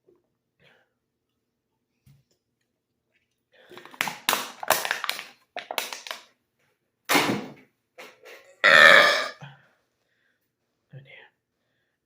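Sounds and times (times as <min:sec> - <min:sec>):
man belching: 0:08.6 - 0:09.4.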